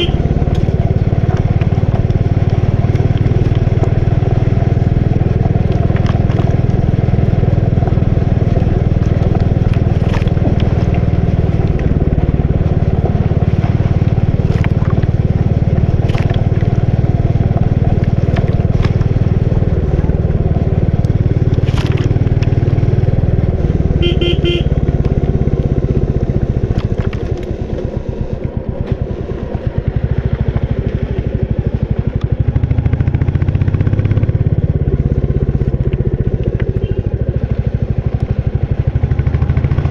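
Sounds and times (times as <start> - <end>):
short horn beep: 0.0 - 0.3, 24.0 - 24.8
motorcycle engine running: 0.0 - 39.9.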